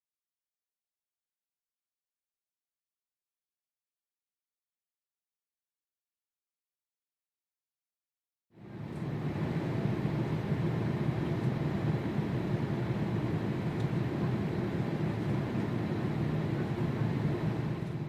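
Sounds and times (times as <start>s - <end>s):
distant jet engine rumble: 8.6s - 18.0s.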